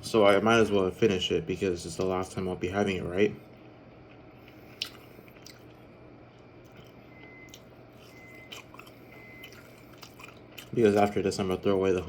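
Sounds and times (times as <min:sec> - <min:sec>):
faint chewing: 0:03.5 - 0:11.4.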